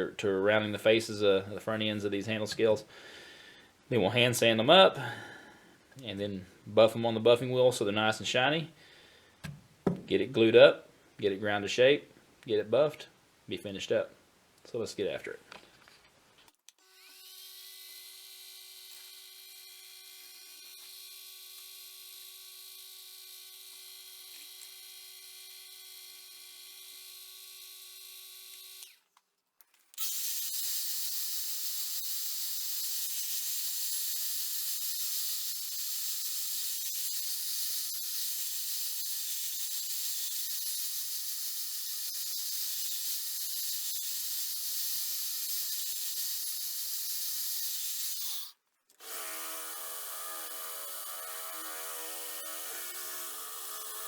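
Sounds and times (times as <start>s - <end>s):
power tool motor whine: 16.9s - 29.0s, 30.0s - 54.0s.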